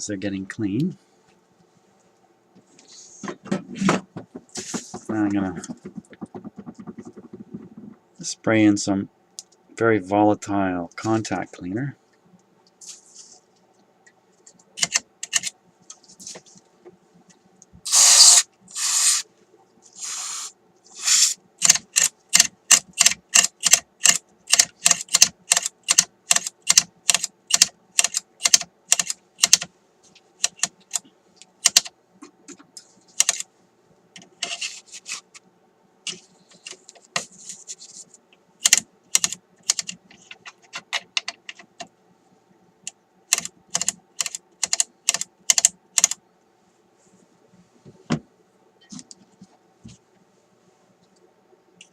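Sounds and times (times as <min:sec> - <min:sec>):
aerosol spray hissing: 0:17.9 - 0:19.2, 0:20.0 - 0:21.4
rotary switch clicking: 0:38.6 - 0:40.0, 0:43.3 - 0:46.2.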